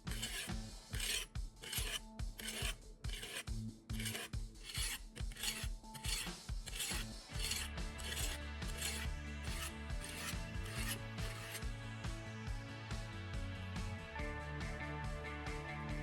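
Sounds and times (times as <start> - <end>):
knife rasping on sharpening stone: 0.0 - 11.6.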